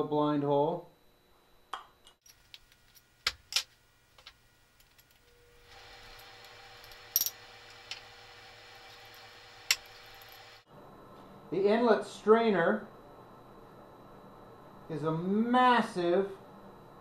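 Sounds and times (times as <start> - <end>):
metal parts clinking: 6.0 - 8.0.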